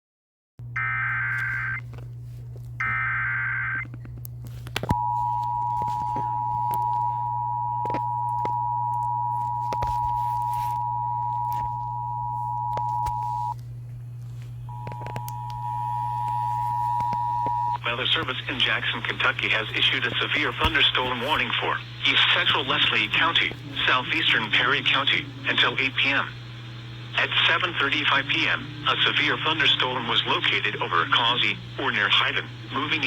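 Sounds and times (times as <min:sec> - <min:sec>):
low hum: 0:00.6 - 0:33.0
crackling clicks: 0:14.8 - 0:15.6.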